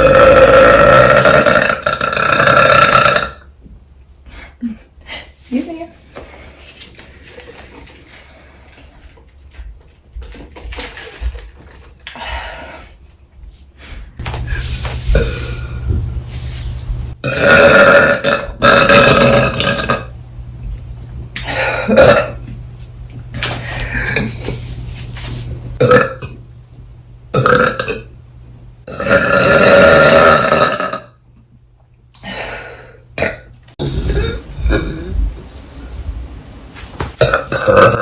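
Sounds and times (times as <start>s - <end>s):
young women burping: 33.2s - 35.1s.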